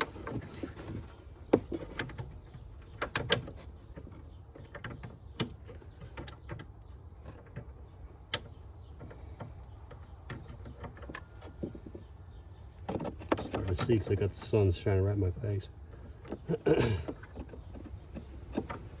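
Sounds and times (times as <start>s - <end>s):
plastic car parts clicking: 0.0s - 12.1s.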